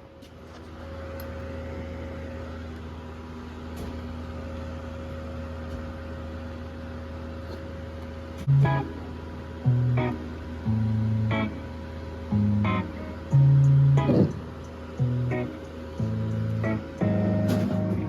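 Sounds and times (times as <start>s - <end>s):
steady machine hum: 0.0s - 18.0s
loud guitar chord: 8.5s - 18.0s.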